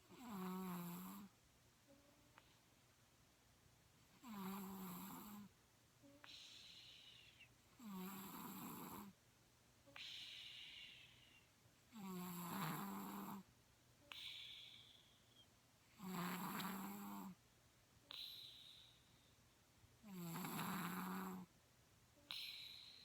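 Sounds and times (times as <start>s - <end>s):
person snoring: 12.0s - 13.4s, 16.0s - 17.4s, 20.1s - 21.5s
whistling breath: 14.2s - 15.5s, 18.1s - 19.4s.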